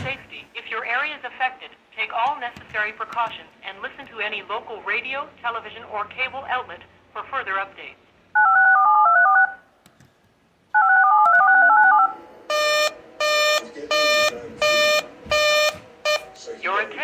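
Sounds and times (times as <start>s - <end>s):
harsh buzzing beeps: 10.8s - 16.4s
touch-tone runs: 10.8s - 16.4s.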